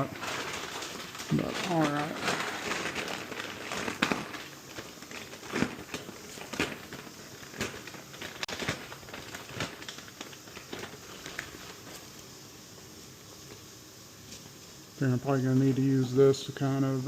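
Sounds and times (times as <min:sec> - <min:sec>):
plastic bags crinkling: 0:00.0 - 0:12.3.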